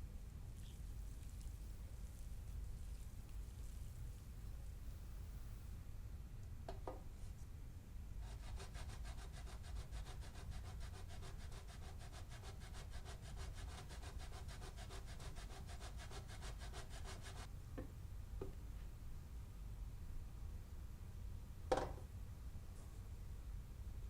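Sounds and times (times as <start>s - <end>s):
short knock: 21.7s - 22.0s.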